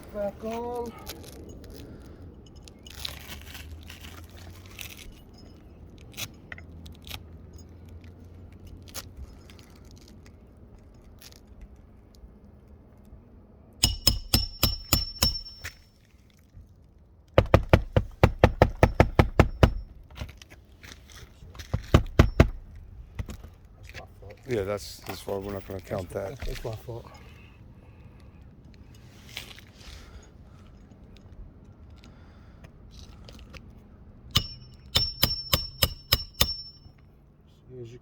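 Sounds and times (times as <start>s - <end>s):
slide hammer metal strikes: 13.8s - 15.8s, 22.0s - 22.6s, 34.3s - 37.0s
light clicks and scrapes: 28.2s - 33.8s.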